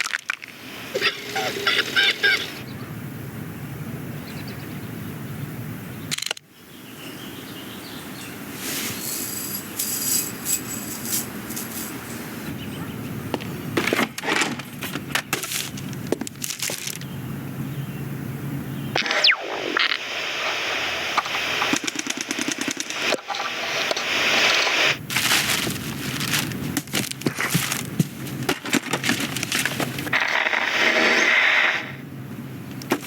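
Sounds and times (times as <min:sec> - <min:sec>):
foley clicks and clatters: 0:08.9 - 0:12.4, 0:21.7 - 0:23.5, 0:25.2 - 0:30.7.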